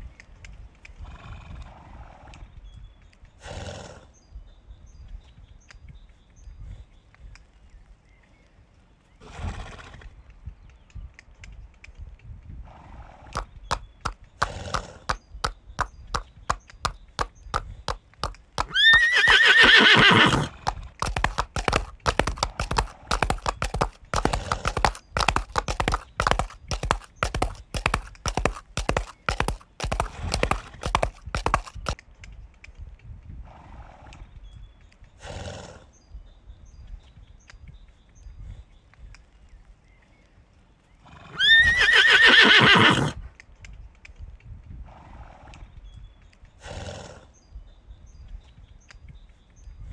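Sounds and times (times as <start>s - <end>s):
horse blowing breath: 13.4s - 15.6s, 17.2s - 32.0s
horse hooves clopping on hard ground: 13.4s - 32.0s
horse whinny: 18.6s - 31.8s, 41.3s - 43.2s.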